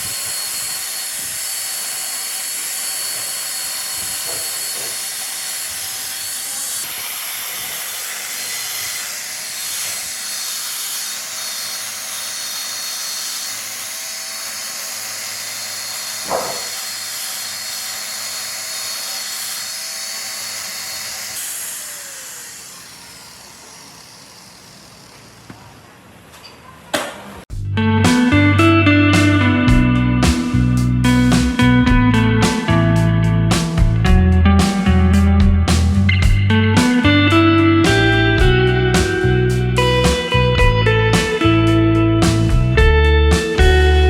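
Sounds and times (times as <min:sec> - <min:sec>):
power tool hissing: 0:00.0 - 0:26.0, 0:29.1 - 0:44.0
sharp knock: 0:16.2 - 0:16.8.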